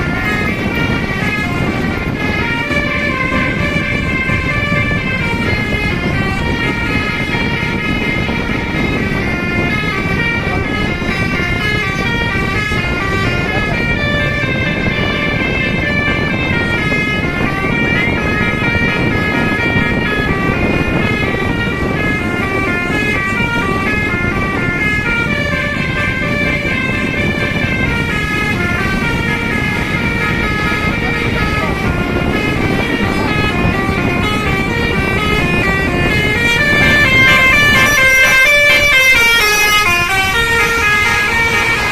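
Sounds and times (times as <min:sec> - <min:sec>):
multi-tone musical bus horn: 0:00.0 - 0:41.9.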